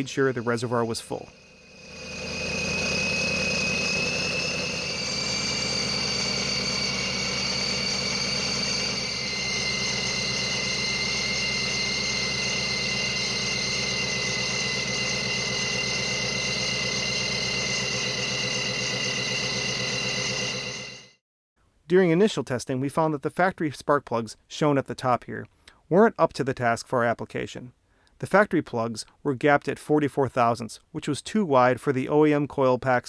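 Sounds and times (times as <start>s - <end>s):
high supercharger whine: 0.0s - 21.2s
car engine idling: 1.8s - 20.9s.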